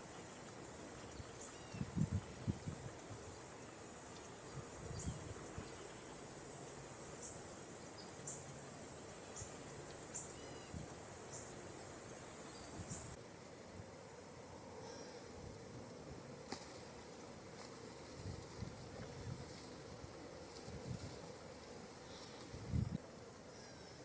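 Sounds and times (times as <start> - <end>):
insect high drone: 0.0 - 24.0
insect short high chirps: 1.2 - 2.2, 9.3 - 13.2.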